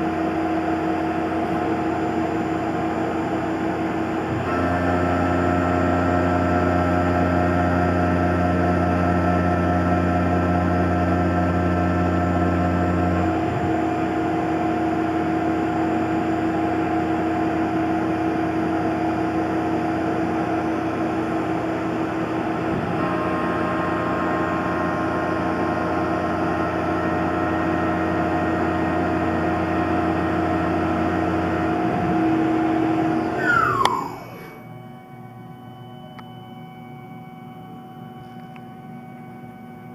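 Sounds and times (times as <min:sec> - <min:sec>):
milling spindle whine: 0:00.0 - 0:39.6
short falling whine: 0:31.6 - 0:38.7
machine cutting noise: 0:33.2 - 0:34.7.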